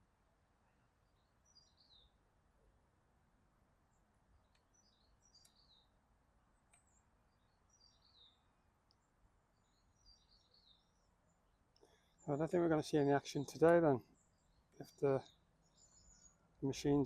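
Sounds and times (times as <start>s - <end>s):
faint bird chirps: 0.6s - 2.2s, 3.8s - 17.0s.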